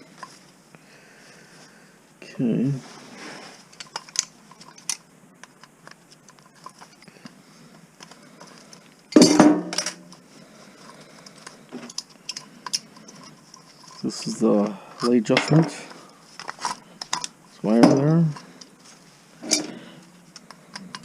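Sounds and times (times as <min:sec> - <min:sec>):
metal parts clattering: 0:03.7 - 0:05.0, 0:08.4 - 0:10.1, 0:11.8 - 0:14.4, 0:15.0 - 0:18.7, 0:19.4 - 0:21.0
metal parts clicking and clinking: 0:03.7 - 0:07.1, 0:08.0 - 0:10.2, 0:10.8 - 0:18.8, 0:19.4 - 0:21.0.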